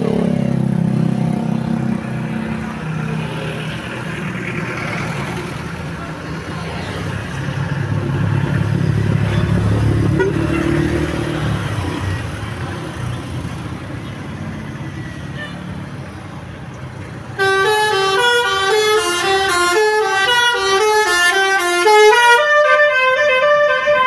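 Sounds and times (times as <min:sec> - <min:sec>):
bus engine noise: 0:00.0 - 0:24.0
musical bus horn: 0:10.0 - 0:10.8, 0:17.3 - 0:24.0.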